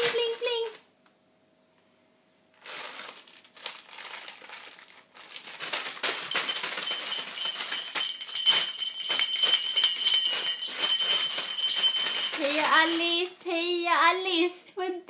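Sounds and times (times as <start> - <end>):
rustly toy crinkling: 2.5 - 13.7
small bell jingling: 6.0 - 13.4.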